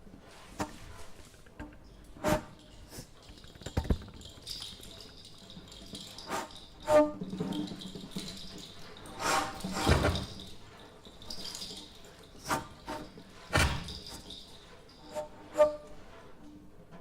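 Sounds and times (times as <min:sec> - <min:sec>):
drum clicks and hits: 0:00.6 - 0:04.8.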